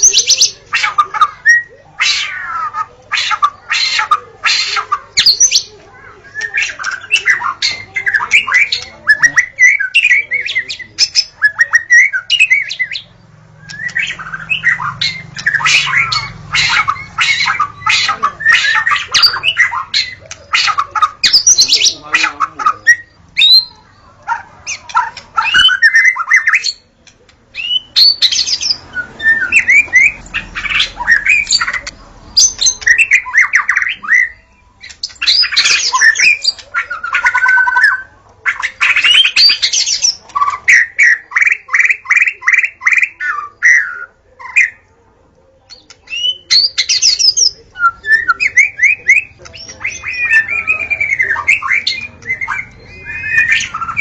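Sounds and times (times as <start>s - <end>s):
bird singing whistles: 27.6s - 31.8s, 46.1s - 54.0s.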